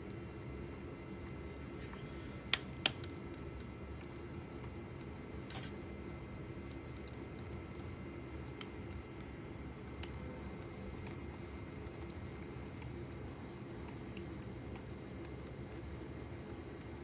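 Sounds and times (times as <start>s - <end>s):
humidifier hum: 0.0s - 17.0s
small water droplet ticks: 6.2s - 13.0s, 13.8s - 17.0s.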